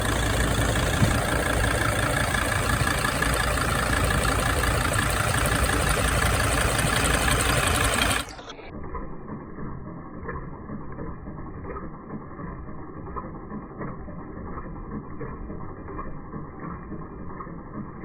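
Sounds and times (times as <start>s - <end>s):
van engine idling: 0.0s - 8.4s
engine ticking: 0.0s - 18.0s.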